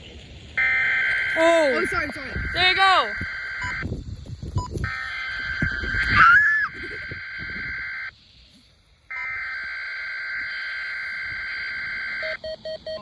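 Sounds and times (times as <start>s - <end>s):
pulsing low beep: 0.6s - 3.8s, 4.5s - 8.1s, 10.4s - 13.0s
harsh buzzing data bursts: 0.6s - 13.0s.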